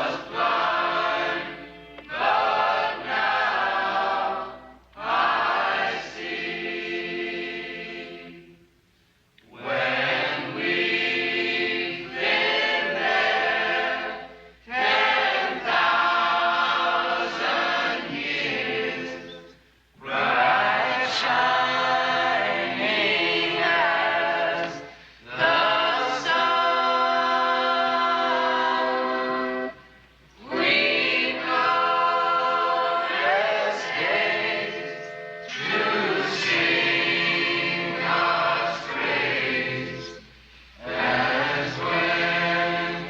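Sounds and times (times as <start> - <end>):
choir singing: 0.0 - 8.8, 9.5 - 43.0.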